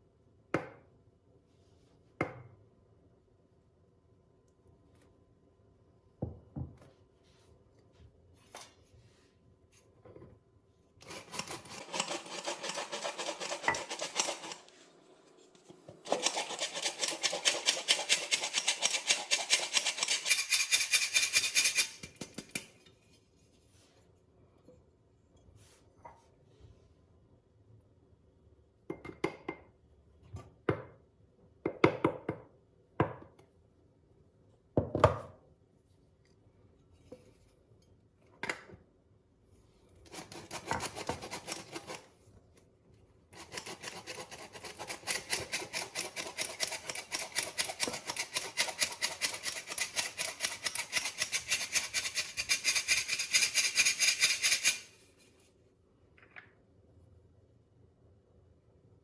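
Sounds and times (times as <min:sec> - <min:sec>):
utensil scraping bowl: 0:11.0 - 0:22.0, 0:40.1 - 0:42.1, 0:43.4 - 0:54.9.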